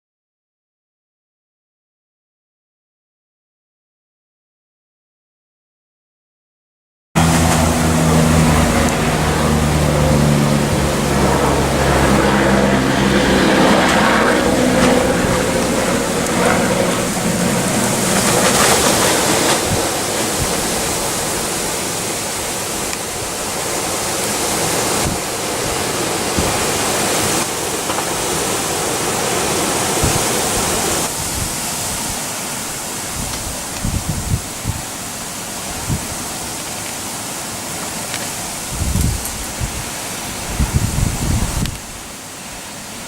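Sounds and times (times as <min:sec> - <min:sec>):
wind buffeting microphone: 0:07.2 - 0:35.0, 0:38.6 - 0:42.1
strong wind blowing: 0:07.2 - 0:36.4, 0:38.5 - 0:42.2.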